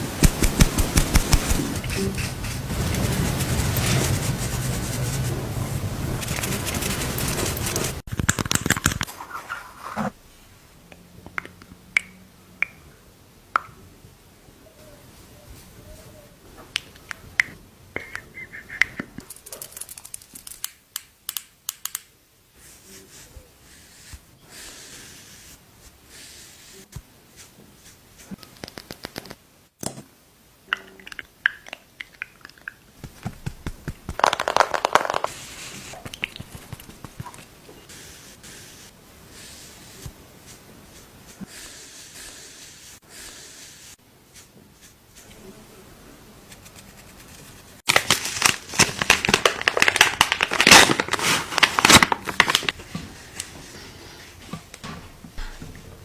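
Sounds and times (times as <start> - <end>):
rustling and crinkling: 0.0 - 10.2, 32.9 - 38.0, 46.5 - 55.6.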